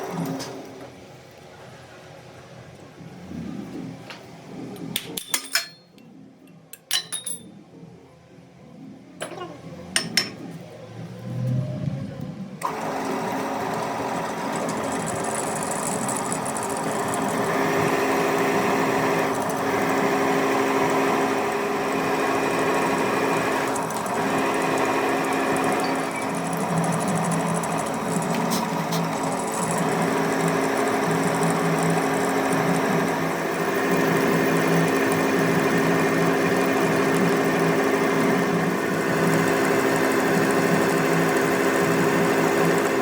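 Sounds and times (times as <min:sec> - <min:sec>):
metal knocks and clinks: 0:06.8 - 0:07.5
machine tool whirring: 0:12.6 - 0:43.0.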